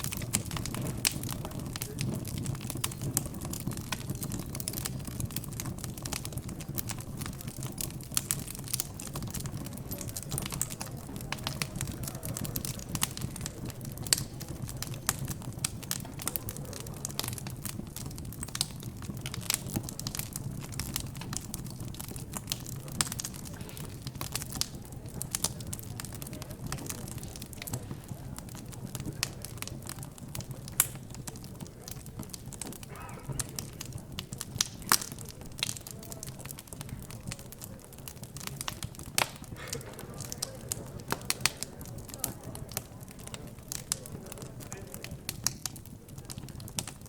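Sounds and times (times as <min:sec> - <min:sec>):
background chatter: 0:00.0 - 0:47.0
wood fire crackling: 0:00.0 - 0:47.0.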